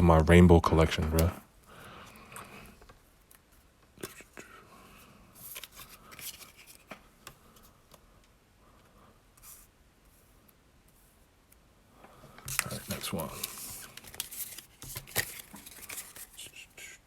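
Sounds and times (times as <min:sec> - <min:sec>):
papery and plastic rustles: 0:05.3 - 0:07.7, 0:12.3 - 0:16.7.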